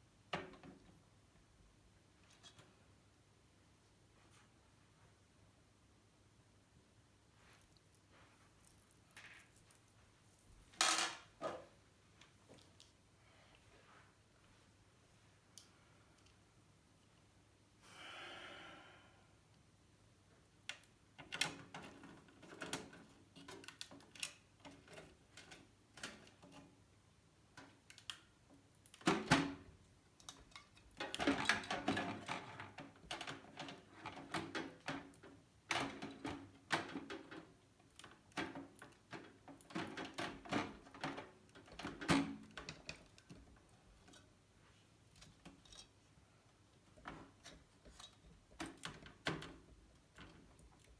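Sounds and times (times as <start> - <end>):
clicks and knocks of computer parts: 28.9 - 44.3.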